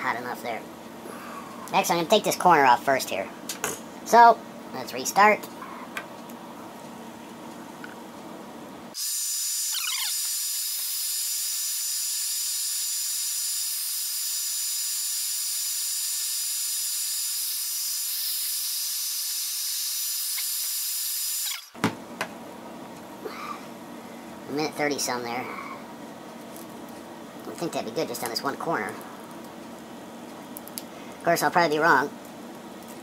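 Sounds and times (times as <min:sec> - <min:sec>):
hot-air blower hissing and whining: 0:08.8 - 0:24.6.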